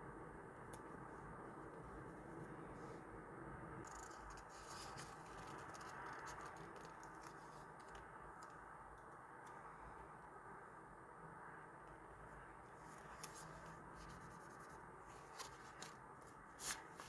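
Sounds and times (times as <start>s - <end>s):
low room hiss: 0.0s - 17.0s
paper rustling: 12.9s - 17.0s.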